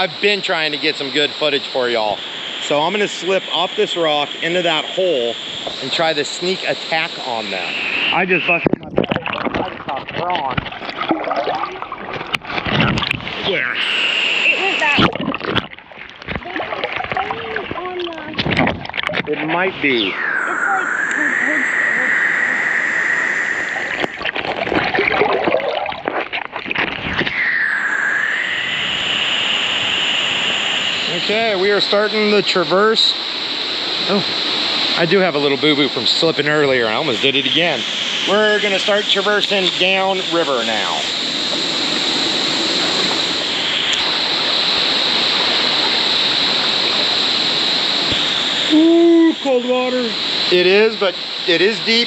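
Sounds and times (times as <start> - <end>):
water splashing and gurgling: 0.0 - 27.8, 30.8 - 52.0
river water over rocks: 9.0 - 19.4, 41.0 - 48.8
river water rushing: 41.0 - 48.8.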